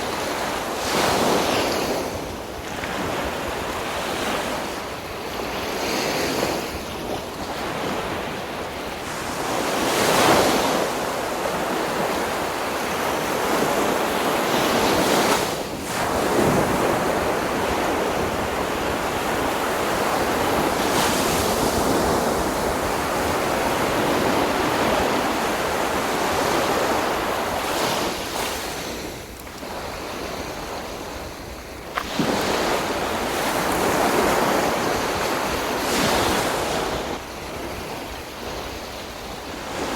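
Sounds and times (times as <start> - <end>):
sea waves breaking on beach: 0.0 - 39.9
wind buffeting microphone: 0.0 - 39.9.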